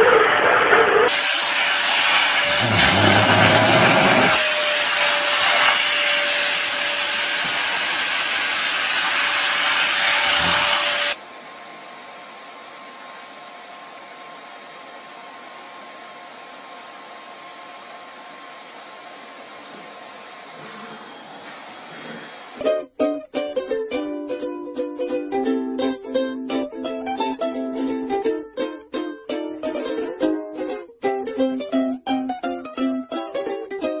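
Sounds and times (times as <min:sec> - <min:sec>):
small motor running: 0:02.2 - 0:11.2.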